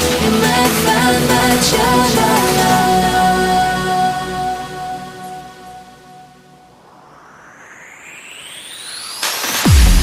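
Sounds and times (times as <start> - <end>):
sustained synthesizer chords: 0.0 - 7.1.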